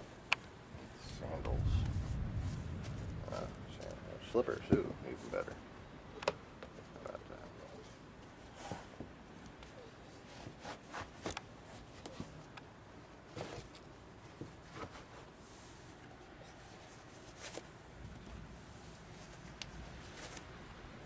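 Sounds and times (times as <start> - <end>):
low steady background noise: 0.0 - 21.0
faint rustles and handling clicks: 6.2 - 20.8.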